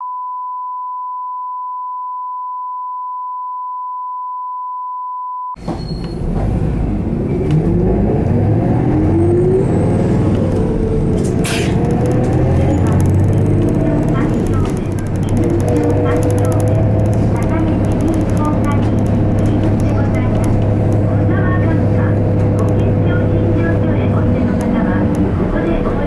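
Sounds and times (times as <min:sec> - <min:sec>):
bus engine drone and whine: 0:05.6 - 0:26.0
steady test tone: 0:08.7 - 0:26.0.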